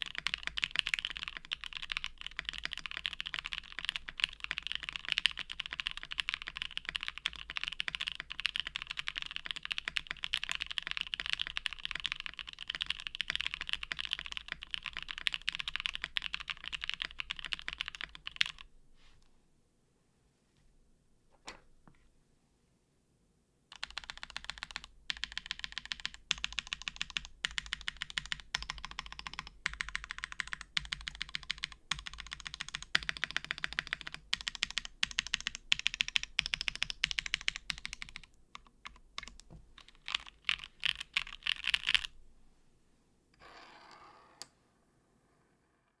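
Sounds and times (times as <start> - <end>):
soft rustle: 18.9 - 20.8.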